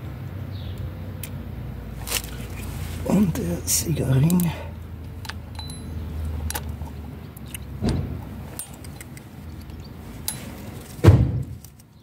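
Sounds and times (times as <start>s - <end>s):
metal clicks and ticks: 4.2s - 10.9s.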